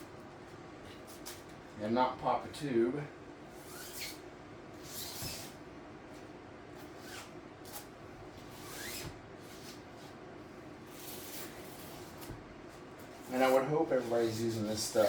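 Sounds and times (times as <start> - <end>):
rubber squeaks: 8.6 - 9.2
rubbing and scuffing: 10.8 - 15.0.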